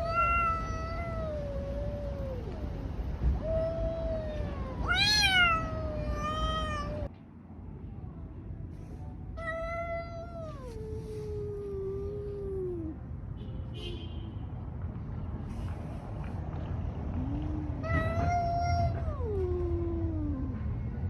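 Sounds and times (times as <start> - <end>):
cats yowling in a fight: 0.0 - 7.1.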